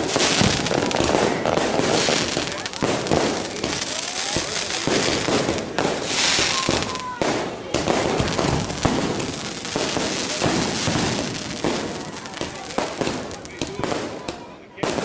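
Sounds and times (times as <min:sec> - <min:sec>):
firework whistle: 0:00.0 - 0:12.0
fireworks bangs: 0:00.0 - 0:15.0
fireworks crackling: 0:00.0 - 0:15.0.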